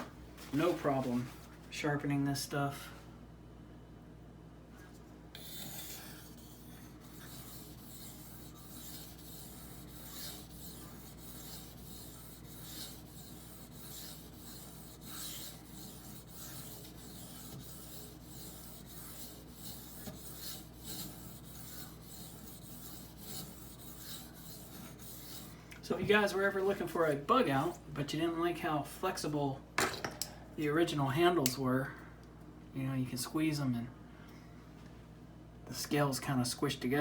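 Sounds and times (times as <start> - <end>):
knife scraping on whetstone: 5.4 - 25.6.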